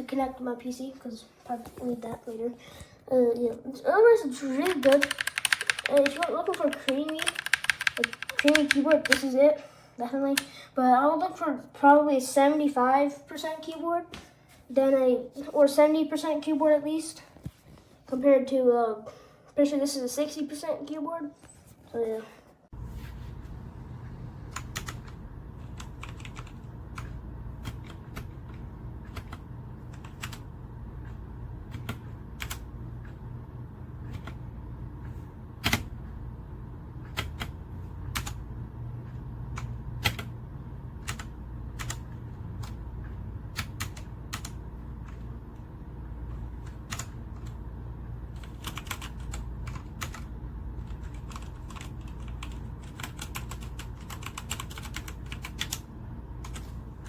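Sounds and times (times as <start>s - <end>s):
mechanical keyboard typing: 4.6s - 9.3s, 24.5s - 33.2s, 34.0s - 34.4s, 35.0s - 36.1s, 37.0s - 38.4s, 39.0s - 40.4s, 41.0s - 45.3s, 46.6s - 47.6s, 48.4s - 56.8s
steady low hum: 22.7s - 57.0s.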